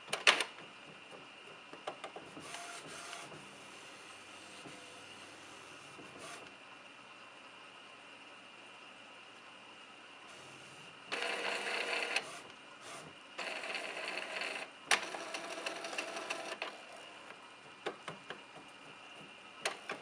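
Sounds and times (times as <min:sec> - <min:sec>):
printer mechanism whirring: 0:00.0 - 0:06.6, 0:11.1 - 0:20.0.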